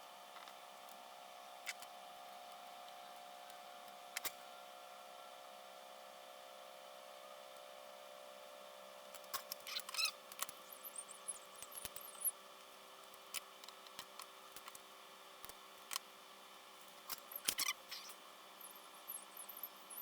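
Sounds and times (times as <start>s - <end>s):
faint electrical hum: 0.0s - 20.0s
faint high squeaks: 9.6s - 10.2s, 17.3s - 20.0s
small parts clicking and tapping: 11.6s - 12.3s.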